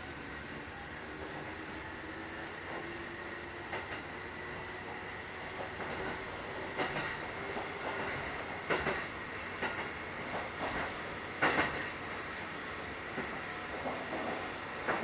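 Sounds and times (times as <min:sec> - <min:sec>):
wheels clacking over rail joints: 0:05.8 - 0:12.0.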